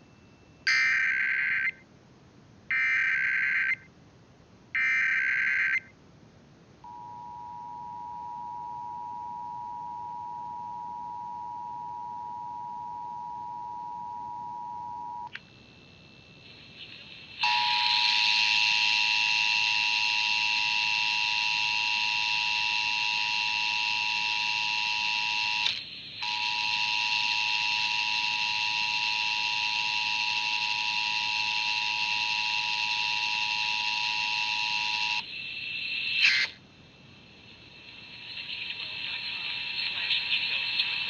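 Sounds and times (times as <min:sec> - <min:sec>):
noisy sound carrying tones: 0:06.8 - 0:41.0
two-tone attention signal: 0:06.9 - 0:15.3.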